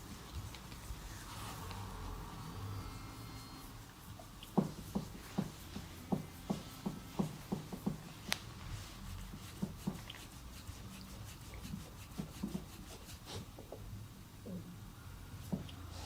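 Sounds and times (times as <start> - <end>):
hands patting: 4.0 - 13.8.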